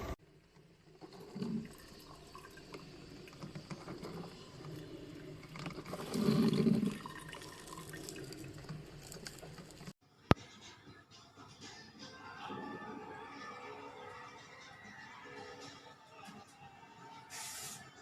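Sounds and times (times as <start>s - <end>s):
coffee maker gurgling and dripping: 0.2s - 10.0s.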